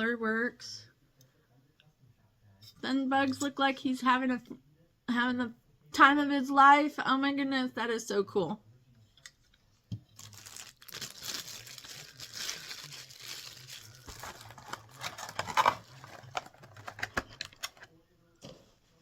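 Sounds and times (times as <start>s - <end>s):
plastic packaging crinkling: 10.1s - 17.9s.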